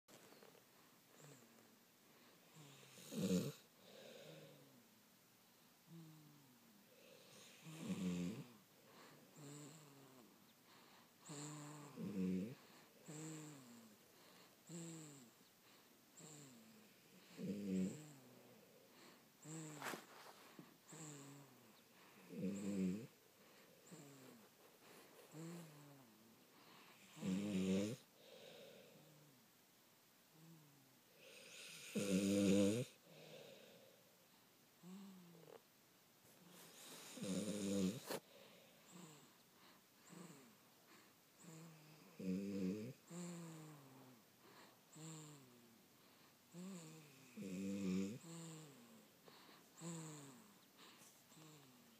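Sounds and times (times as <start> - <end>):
people snoring: 2.6 - 4.7, 7.0 - 10.3, 11.2 - 15.3, 16.2 - 18.5, 22.2 - 23.2, 23.8 - 29.3, 31.2 - 33.9, 36.5 - 39.3, 41.4 - 44.2, 46.5 - 51.8.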